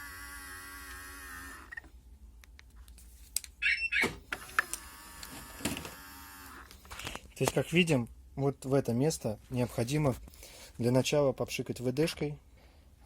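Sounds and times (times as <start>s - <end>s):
mirror motor whining: 0.0s - 1.9s, 3.9s - 6.7s.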